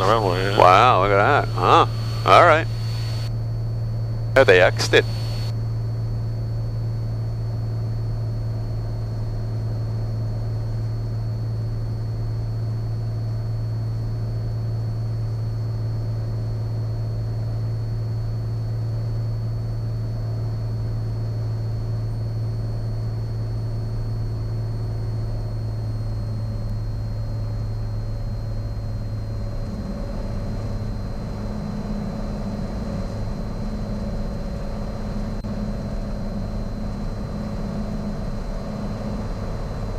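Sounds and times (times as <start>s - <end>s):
propeller aircraft engine droning: 0.0s - 3.3s, 26.4s - 39.9s
faint high whine: 0.0s - 14.8s, 17.4s - 39.9s.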